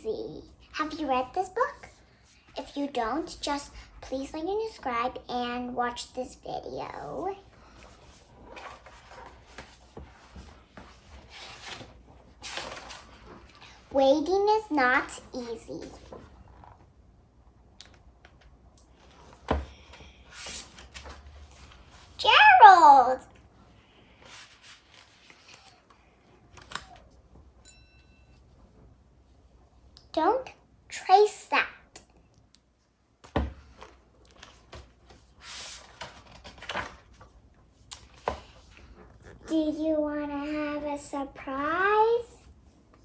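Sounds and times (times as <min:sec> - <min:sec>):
book page turning: 0:07.9 - 0:13.8, 0:24.2 - 0:26.0, 0:33.7 - 0:37.3.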